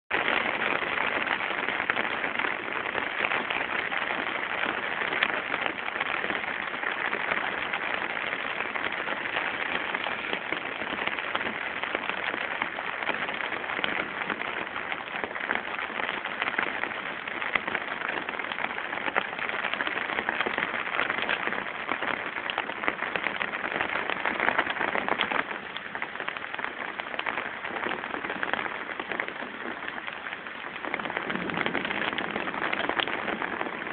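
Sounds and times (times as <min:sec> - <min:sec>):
heavy rain pouring: 0:00.1 - 0:33.9.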